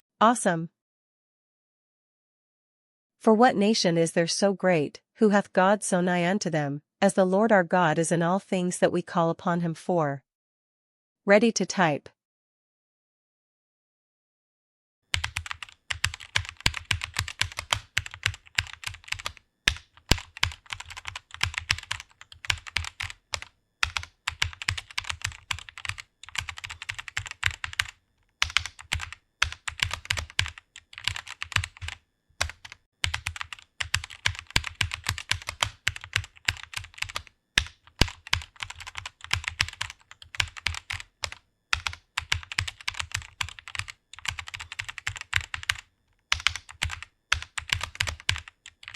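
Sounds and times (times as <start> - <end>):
fast typing on keyboard: 15.1 - 48.9.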